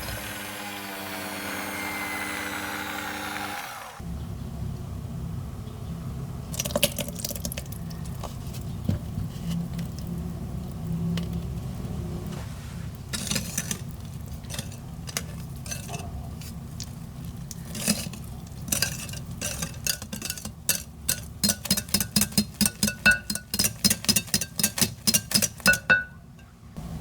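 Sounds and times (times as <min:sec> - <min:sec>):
utensil clinking against bowl: 0:13.2 - 0:26.5.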